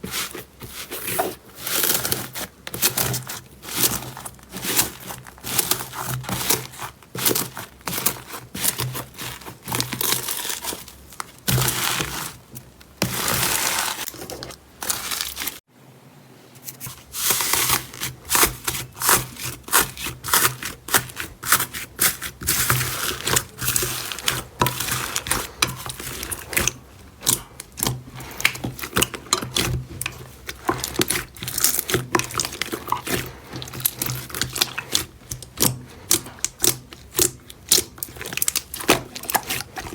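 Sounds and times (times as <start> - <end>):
slime crackling and popping: 22.5 - 39.9.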